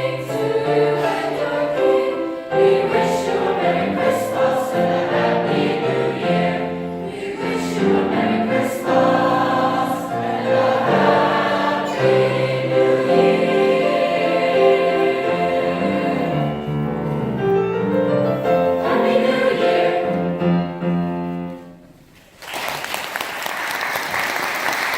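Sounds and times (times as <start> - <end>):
choir singing in harmony: 0.0 - 21.3
audience applause: 22.4 - 24.9.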